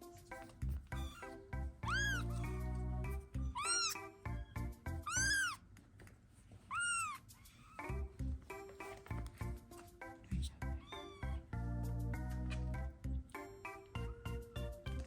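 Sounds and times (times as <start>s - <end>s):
background music: 0.0s - 5.8s, 7.2s - 15.0s
kitten meowing: 1.0s - 2.6s, 3.4s - 4.1s, 5.0s - 5.6s, 6.7s - 7.9s, 10.8s - 11.4s.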